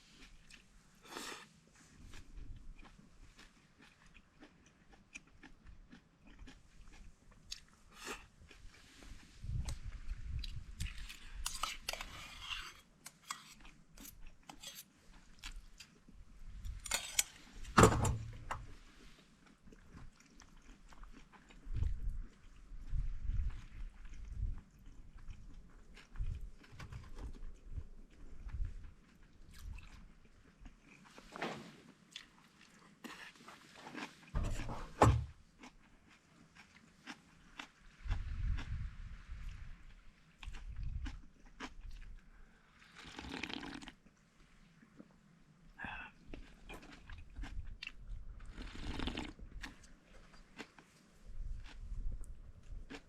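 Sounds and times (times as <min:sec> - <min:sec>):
person chewing crunchy food: 0:00.0 - 0:44.1, 0:46.0 - 0:53.0
close-up crunches and clicks: 0:02.2 - 0:18.8, 0:46.4 - 0:52.0.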